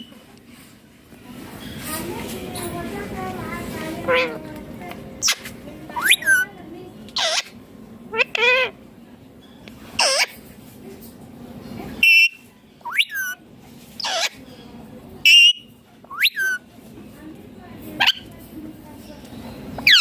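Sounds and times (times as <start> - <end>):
parakeet squawks and chirps: 4.0 - 4.4, 5.2 - 6.5, 7.2 - 8.8, 10.0 - 10.4, 12.0 - 13.4, 14.0 - 14.5, 15.2 - 16.6, 18.0 - 18.3, 19.8 - 20.0.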